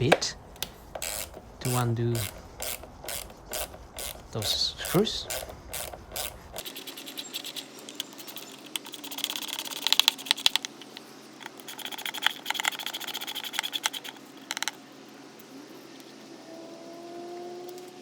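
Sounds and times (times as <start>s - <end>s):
screwdriver ratchet clicking: 1.0s - 14.8s.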